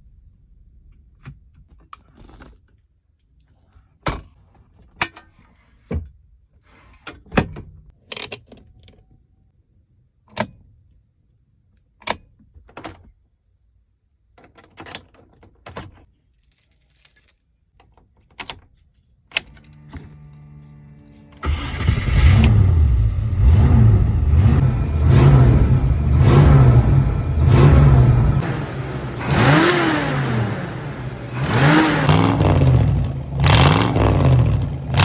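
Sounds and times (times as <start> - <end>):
car keys jangling: 16.3 - 17.4
steady low hum: 22.5 - 35.0.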